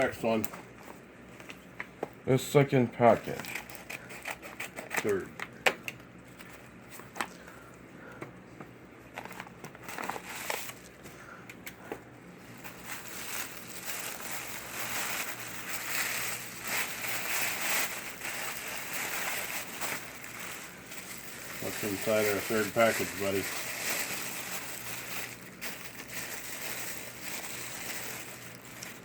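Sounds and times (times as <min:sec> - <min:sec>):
packaging crinkling: 0:03.2 - 0:07.6, 0:09.1 - 0:11.0, 0:12.4 - 0:29.0.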